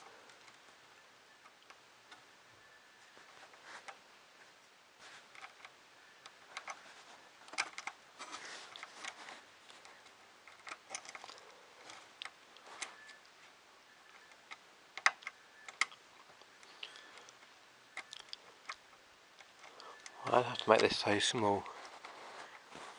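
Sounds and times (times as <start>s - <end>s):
small parts clicking and clattering: 5.2s - 13.3s.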